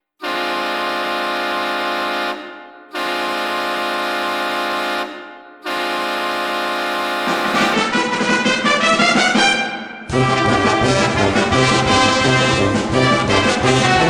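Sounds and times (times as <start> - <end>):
hockey goal horn blasts: 0.2 - 7.8.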